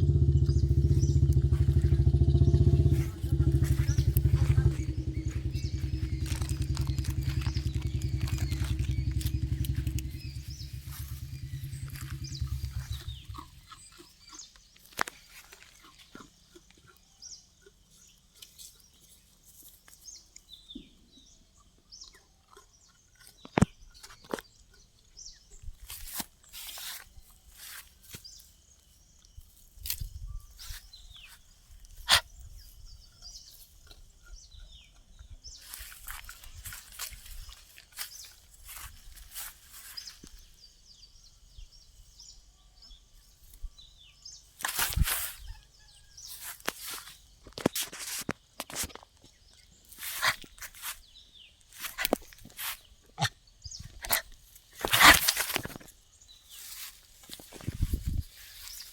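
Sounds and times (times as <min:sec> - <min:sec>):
engine running: 0:00.0 - 0:14.0
birds chirping: 0:00.0 - 0:58.9.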